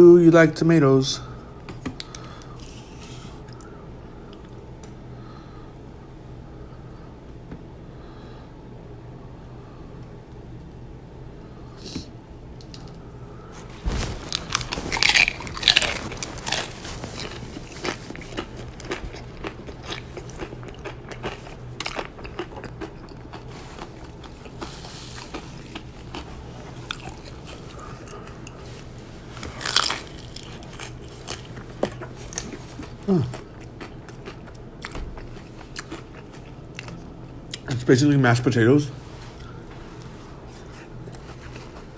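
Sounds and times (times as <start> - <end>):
crunchy chewing: 12.7 - 37.7
crunchy bites: 13.9 - 28.6, 29.4 - 37.0.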